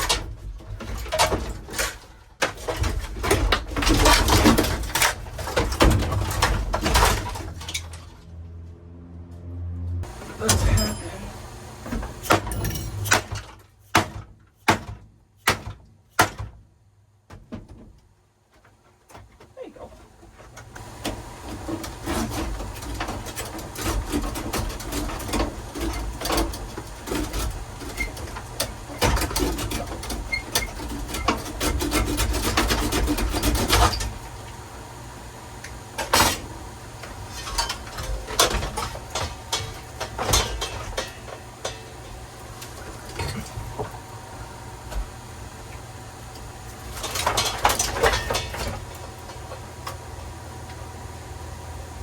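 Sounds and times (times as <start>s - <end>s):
clicks and knocks of parts: 0.0s - 8.3s, 35.7s - 43.9s, 46.4s - 50.0s
plastic parts rubbing and scraping: 21.6s - 34.1s.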